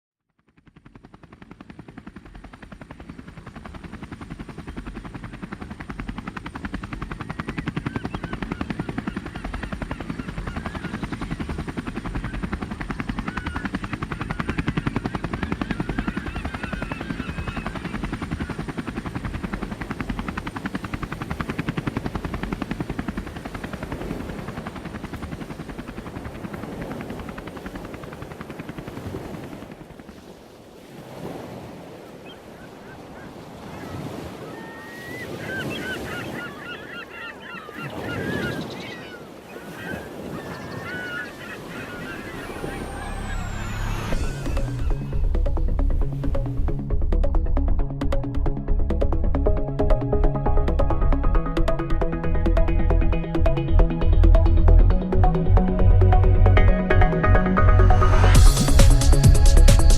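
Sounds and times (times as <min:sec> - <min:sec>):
drone propellers whining: 0:03.0 - 0:25.9, 0:40.9 - 0:59.9.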